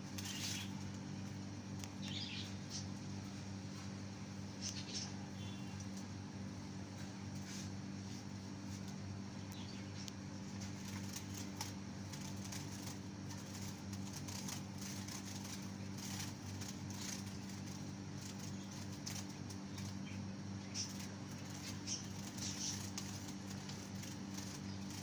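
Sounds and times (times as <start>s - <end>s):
wings fluttering: 0.0s - 4.0s, 10.3s - 25.0s.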